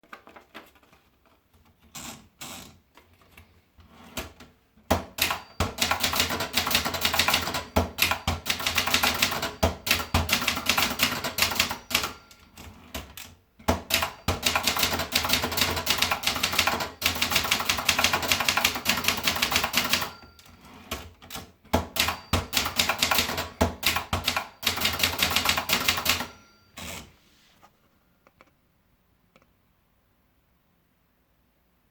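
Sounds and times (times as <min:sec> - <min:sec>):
typewriter keystrokes: 0:04.9 - 0:27.1.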